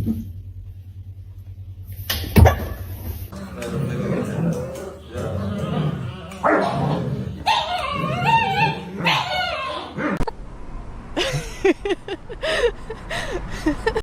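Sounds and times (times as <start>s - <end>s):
dog whining: 3.3s - 10.2s
dog yipping: 7.4s - 10.0s.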